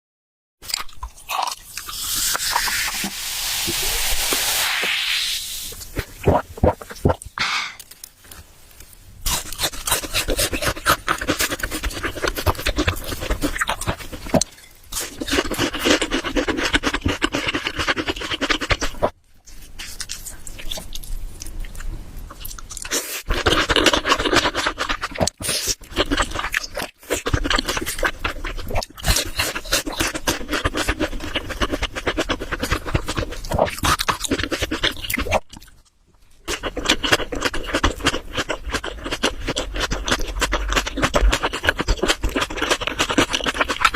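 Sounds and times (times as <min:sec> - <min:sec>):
wet chewing sounds: 0:09.3 - 0:43.9.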